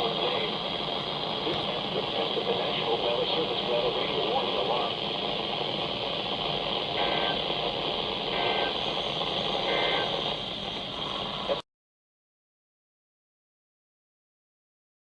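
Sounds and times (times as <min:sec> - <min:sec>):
radio static hiss: 0:00.0 - 0:11.6
two-tone warbling data bursts: 0:07.0 - 0:07.6, 0:08.3 - 0:11.6.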